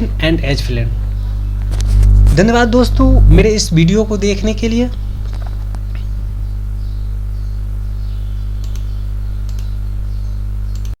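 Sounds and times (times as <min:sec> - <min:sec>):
electrical mains hum: 0:00.0 - 0:11.0
faint clicks: 0:08.6 - 0:09.7, 0:10.7 - 0:11.0.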